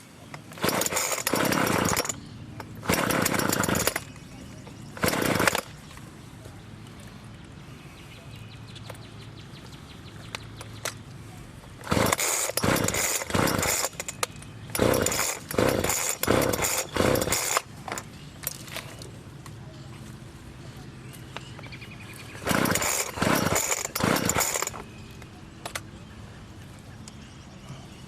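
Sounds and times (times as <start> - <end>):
chainsaw idling and revving: 0.5 - 2.2, 2.8 - 4.1, 5.0 - 5.8, 11.8 - 18.1, 22.4 - 24.8.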